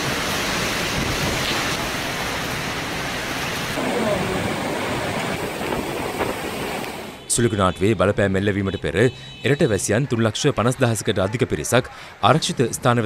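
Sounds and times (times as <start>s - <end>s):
driving rain: 0.0s - 7.2s
rushing wind: 0.0s - 7.3s.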